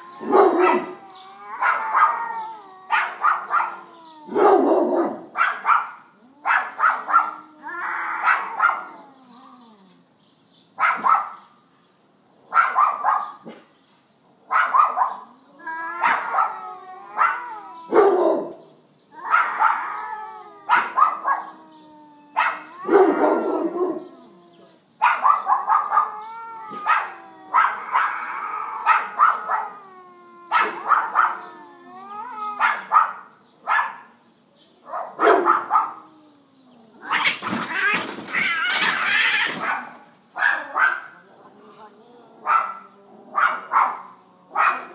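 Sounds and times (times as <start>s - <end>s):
cats screeching: 0.0s - 10.1s, 14.5s - 33.4s, 35.4s - 44.9s
cats yowling in a fight: 0.0s - 10.1s, 14.5s - 33.3s, 35.4s - 44.9s.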